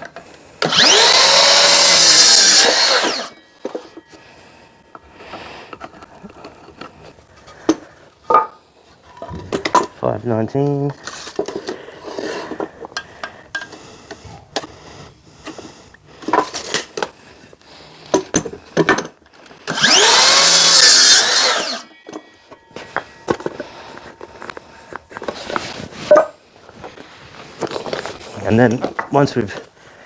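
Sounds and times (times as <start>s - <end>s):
small power tool running: 0.6s - 3.8s, 19.6s - 21.9s.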